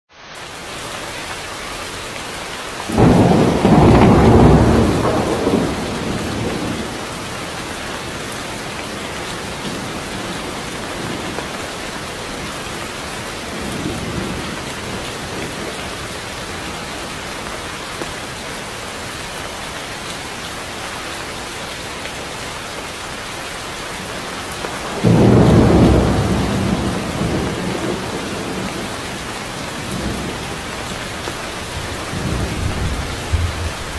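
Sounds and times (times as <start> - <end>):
heavy rain: 0.1 - 33.9
thunder: 2.9 - 8.2, 24.8 - 30.7, 31.7 - 33.9.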